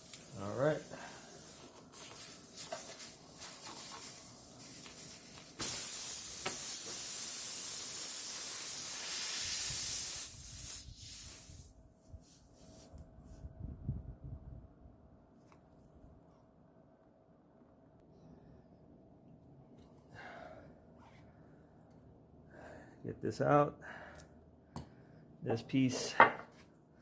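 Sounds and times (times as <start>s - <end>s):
air hissing out of tire: 0.0s - 12.9s.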